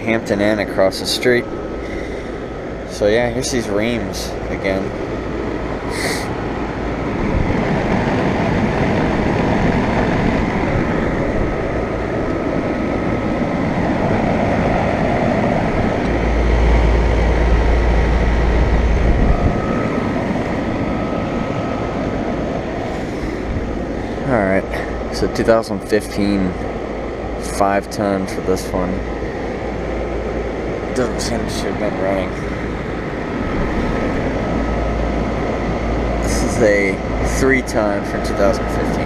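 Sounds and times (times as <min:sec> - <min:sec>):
compressors humming: 0:00.0 - 0:39.0
condenser fans whooshing: 0:00.0 - 0:39.0
faint high whine: 0:00.0 - 0:39.0
deep low rumble: 0:09.8 - 0:25.8.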